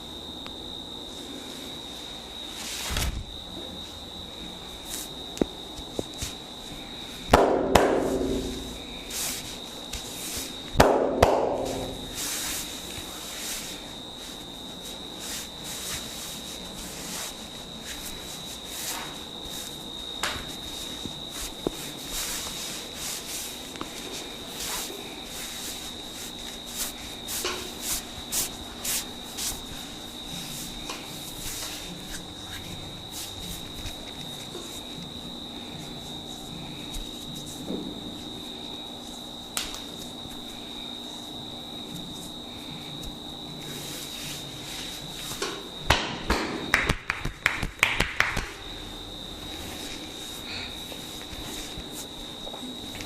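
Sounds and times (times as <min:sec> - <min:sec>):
hands rubbing hair and skin: 0:08.1 - 0:10.7, 0:11.5 - 0:35.0, 0:49.5 - 0:52.3
hand slaps or taps: 0:45.9 - 0:48.5.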